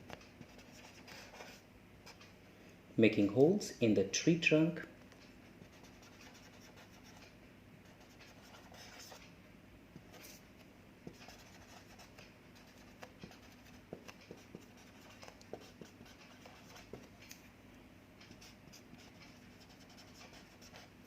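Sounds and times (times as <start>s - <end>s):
pen scratching while writing: 5.7s - 7.2s, 8.0s - 9.2s, 11.1s - 17.1s, 18.4s - 20.9s.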